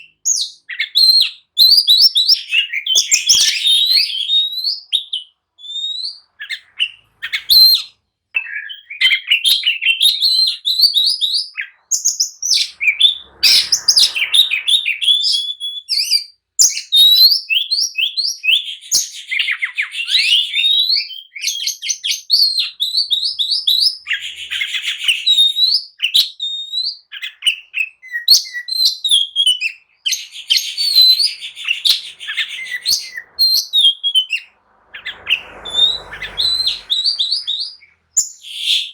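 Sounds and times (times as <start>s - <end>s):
songbird singing: 0.0s - 18.6s, 21.9s - 38.9s
harsh rasping bird notes: 11.6s - 15.7s, 30.0s - 38.9s.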